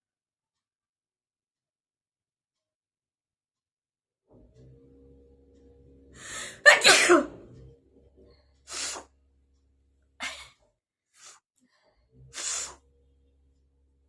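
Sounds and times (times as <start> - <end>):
person sneezing: 6.3 - 7.4
short breathy noises: 11.2 - 12.8.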